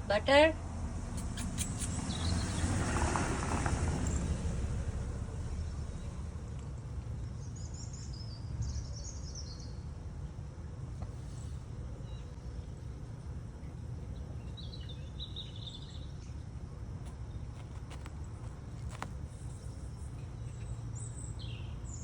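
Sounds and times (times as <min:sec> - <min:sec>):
low background rumble: 0:00.0 - 0:22.0
small bird chirping: 0:01.0 - 0:02.8, 0:14.1 - 0:16.4, 0:17.0 - 0:22.0.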